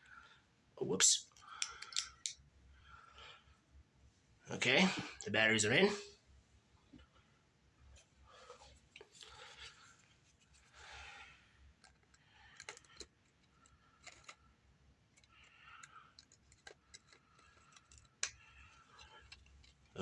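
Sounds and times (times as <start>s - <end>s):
plastic flashlight clicks and rustles: 1.6s - 2.4s.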